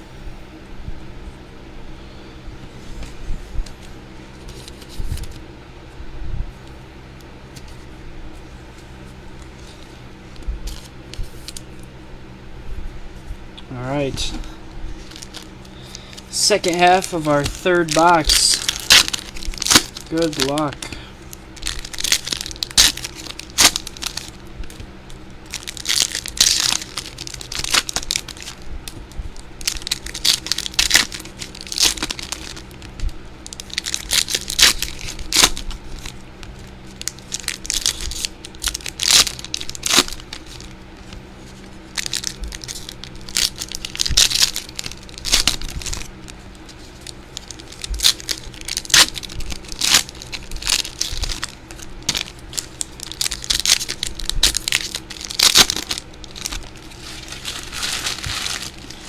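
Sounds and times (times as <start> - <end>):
wrappers torn and crinkled: 14.9 - 59.0
cards clicking: 15.2 - 20.9.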